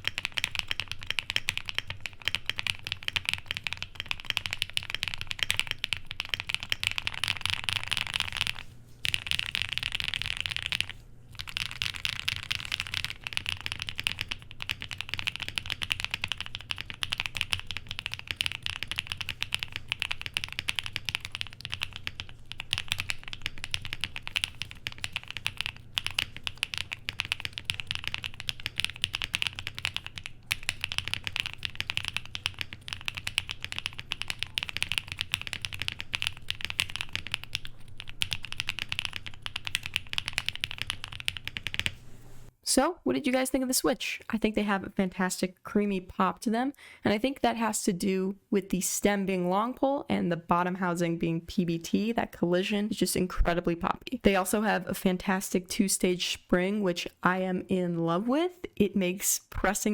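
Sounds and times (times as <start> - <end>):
typing on mechanical keyboard: 0.0 - 42.0.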